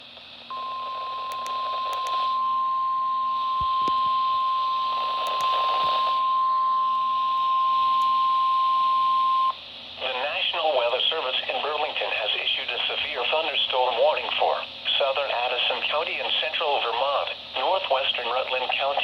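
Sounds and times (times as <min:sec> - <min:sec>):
steady high alarm beep: 0:00.5 - 0:09.6
radio hiss: 0:10.0 - 0:19.0.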